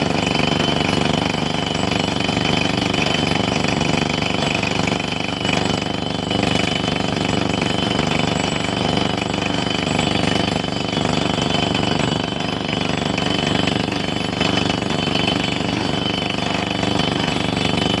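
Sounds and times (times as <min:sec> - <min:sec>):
construction machine pounding: 0:00.0 - 0:18.0.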